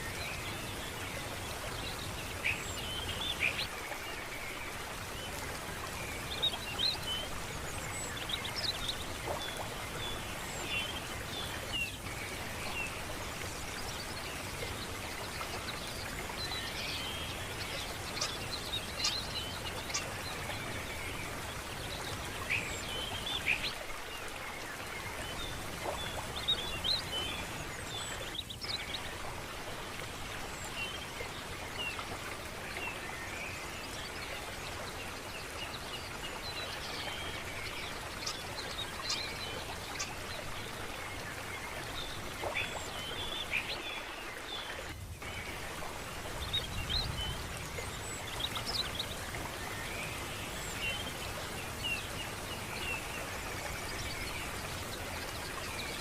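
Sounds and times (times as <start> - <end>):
flowing water: 0.0 - 56.0
small birds chirping: 5.2 - 23.8.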